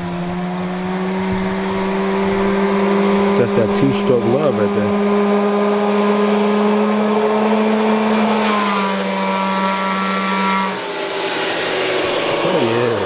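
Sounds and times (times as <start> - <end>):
go-kart engine buzzing: 0.0 - 13.0.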